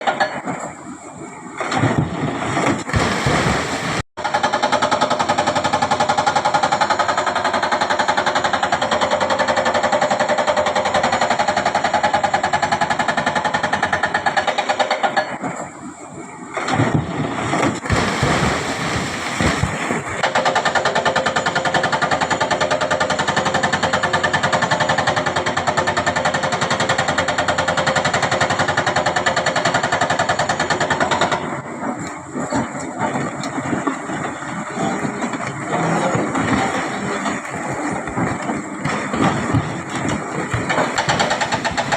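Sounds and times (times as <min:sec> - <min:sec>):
hydraulic breaker hammering rock: 0:02.7 - 0:15.6, 0:16.7 - 0:41.9
excavator engine running: 0:16.5 - 0:41.9.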